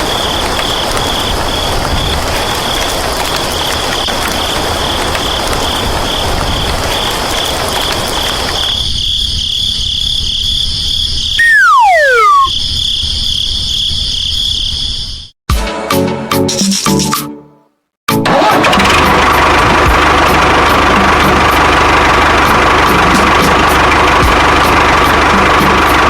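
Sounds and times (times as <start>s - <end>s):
whistle-like tone sliding down: 11.4s - 12.5s.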